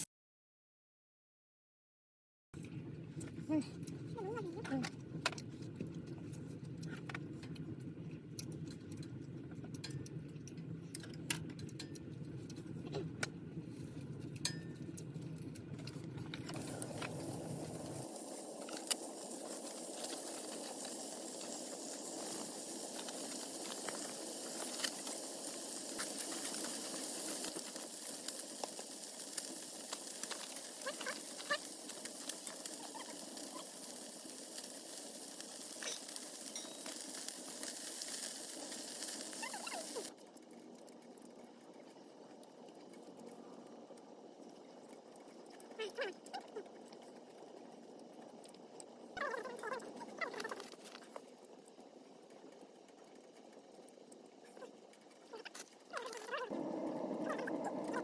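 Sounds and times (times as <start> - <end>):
food sizzling in a pan: 16.5 - 40.2.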